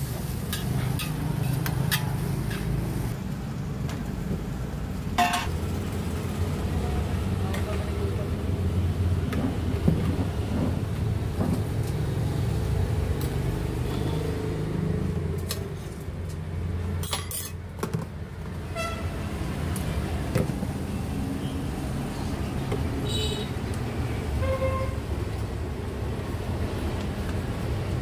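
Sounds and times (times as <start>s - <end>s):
road traffic rumble: 0.0s - 28.0s.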